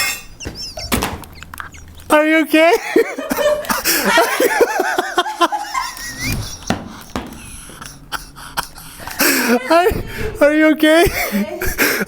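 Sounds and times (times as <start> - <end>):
knocks and rustles: 0.0 - 1.7
people laughing: 0.0 - 12.0.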